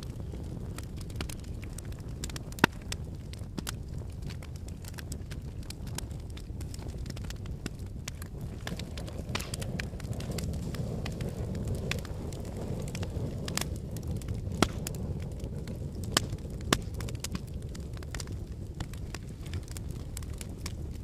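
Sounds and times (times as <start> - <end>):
fire crackling in fireplace: 0.0 - 21.0.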